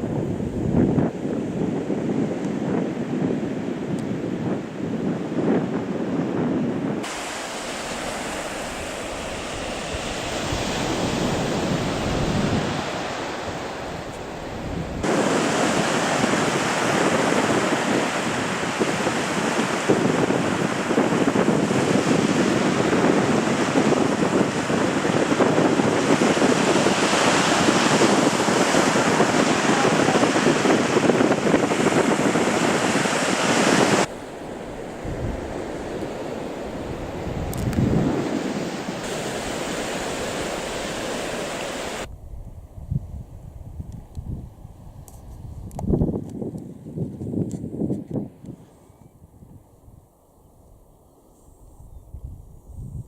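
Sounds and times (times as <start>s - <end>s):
surf washing on shore: 0.0s - 42.1s
wind buffeting microphone: 0.0s - 53.0s.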